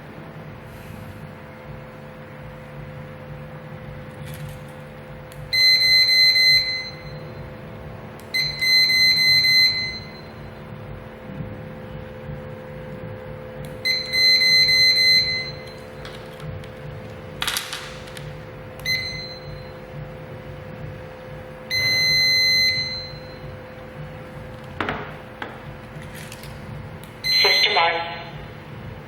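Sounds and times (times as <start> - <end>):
steady low hum: 0.0 - 29.0
alarm system beeping: 5.4 - 7.6, 8.2 - 10.8, 13.6 - 16.0, 18.8 - 20.0, 21.3 - 24.1, 27.1 - 28.6.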